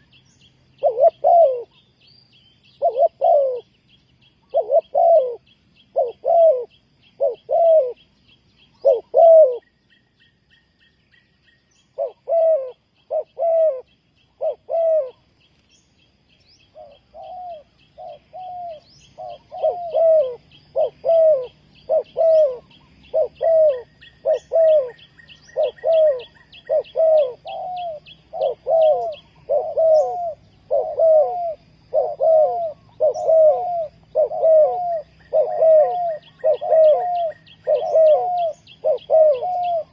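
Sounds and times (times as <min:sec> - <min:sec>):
dove cooing: 0:00.7 - 0:01.8, 0:02.6 - 0:03.8, 0:04.4 - 0:09.8, 0:11.8 - 0:15.3, 0:16.7 - 0:39.9.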